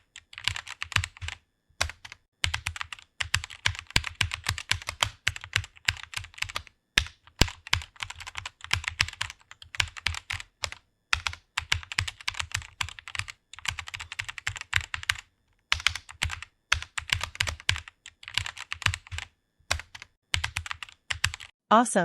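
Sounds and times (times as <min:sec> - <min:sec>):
fast keyboard typing: 0:00.0 - 0:21.6.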